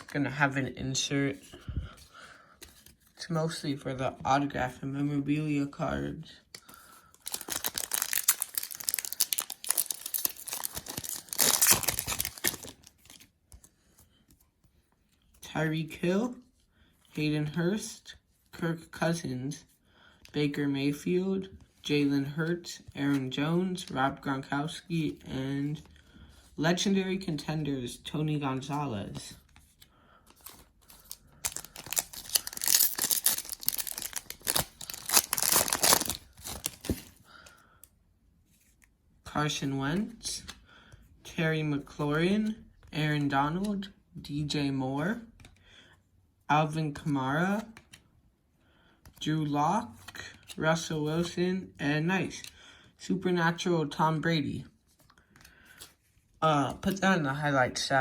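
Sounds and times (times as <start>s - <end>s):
card pack wrapper crinkling and tearing: 6.7s - 13.3s, 30.4s - 37.2s.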